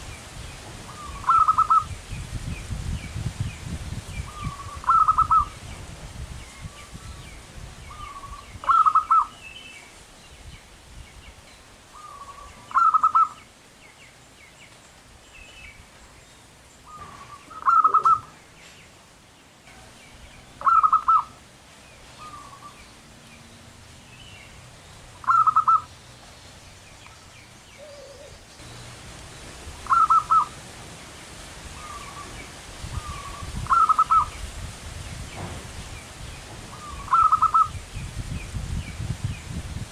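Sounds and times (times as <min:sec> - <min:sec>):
small birds chirping faintly: 0:00.0 - 0:39.6
dove cooing: 0:00.9 - 0:01.9, 0:04.3 - 0:05.6, 0:07.9 - 0:09.4, 0:12.0 - 0:13.4, 0:16.9 - 0:18.4, 0:20.6 - 0:21.4, 0:25.2 - 0:25.9, 0:27.8 - 0:28.4, 0:29.8 - 0:30.6, 0:31.8 - 0:32.4, 0:33.0 - 0:34.3, 0:36.7 - 0:37.7.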